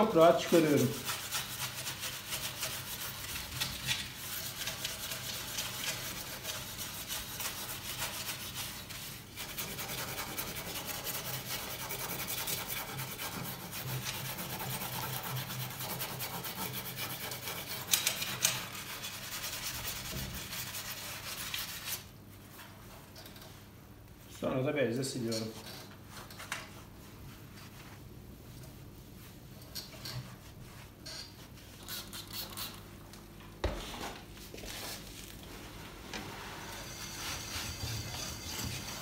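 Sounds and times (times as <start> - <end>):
steel wool scrubbing glass: 0.0 - 22.1, 36.2 - 39.0.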